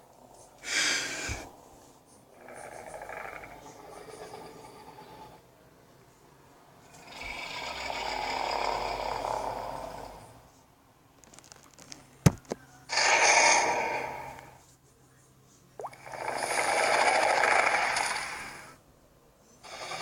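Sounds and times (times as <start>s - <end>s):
monster breathing exhales: 0.6s - 1.5s, 12.9s - 14.6s
sharp knock: 12.3s - 12.6s.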